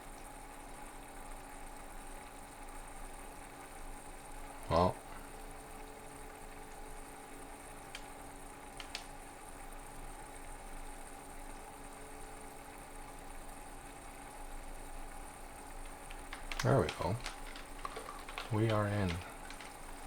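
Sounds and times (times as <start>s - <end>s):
computer fans humming: 0.0s - 20.0s
soft clicks: 7.9s - 8.2s, 8.8s - 9.2s, 16.1s - 20.0s.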